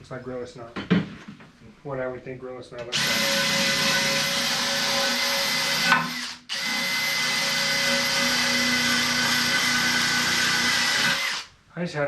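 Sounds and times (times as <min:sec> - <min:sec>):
handheld power tool scouring: 0:02.9 - 0:11.5.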